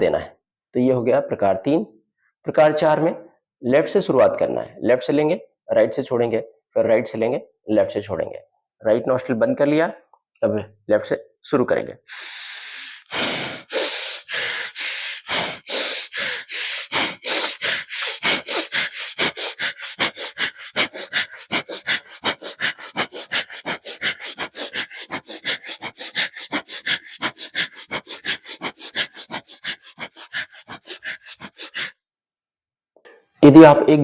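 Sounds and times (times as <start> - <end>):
rapid forceful nostril breathing: 12.1 - 32.0.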